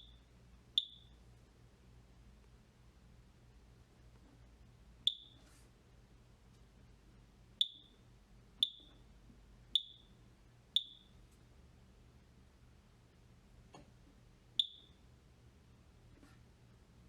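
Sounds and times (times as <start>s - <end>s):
keypad beeps: 0.8s - 1.1s, 5.1s - 5.4s, 7.6s - 8.0s, 8.6s - 9.0s.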